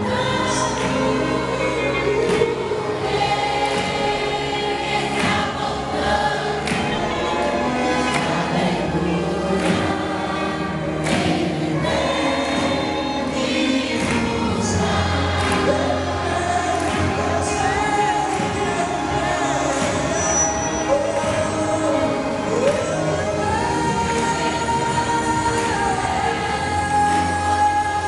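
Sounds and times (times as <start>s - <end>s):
choir singing: 0.0s - 28.0s
bass and drum beat: 13.9s - 27.9s.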